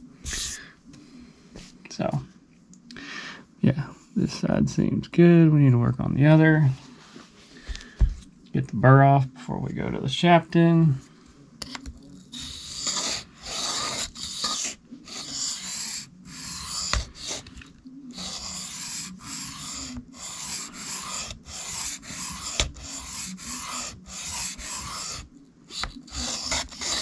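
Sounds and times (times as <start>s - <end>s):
knife scraping on sharpening stone: 12.1s - 17.5s, 18.1s - 27.0s.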